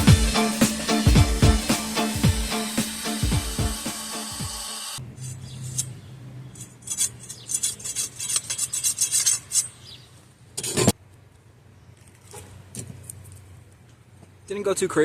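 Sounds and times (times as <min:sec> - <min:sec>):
scraping strokes on knife blade: 0:06.6 - 0:09.8.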